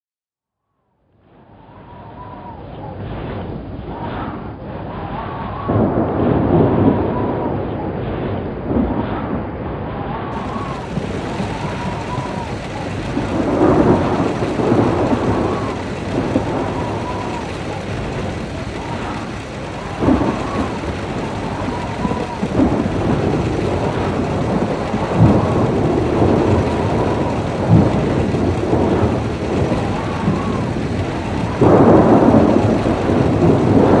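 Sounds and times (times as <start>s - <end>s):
rolling thunder: 5.4s - 9.7s, 10.3s - 34.0s
thunder cracks: 5.6s - 9.5s, 10.3s - 34.0s
heavy rain: 10.3s - 34.0s.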